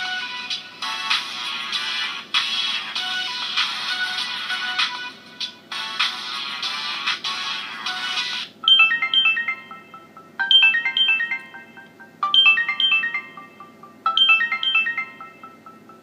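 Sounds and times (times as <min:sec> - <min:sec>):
mobile phone ringtone: 0:08.6 - 0:16.0.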